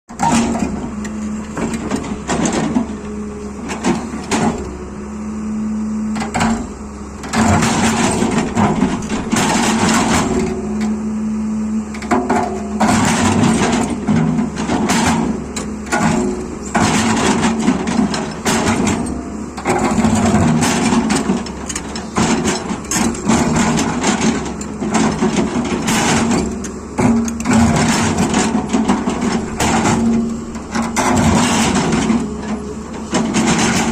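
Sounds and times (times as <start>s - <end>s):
excavator engine running: 0.1s - 33.9s
clattering and scraping: 12.1s - 33.9s.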